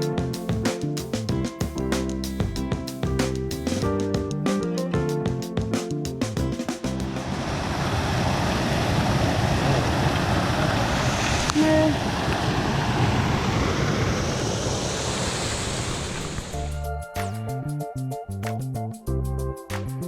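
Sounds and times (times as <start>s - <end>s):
surf: 0.0s - 17.5s
wind: 0.0s - 20.0s
wind buffeting microphone: 6.4s - 18.1s.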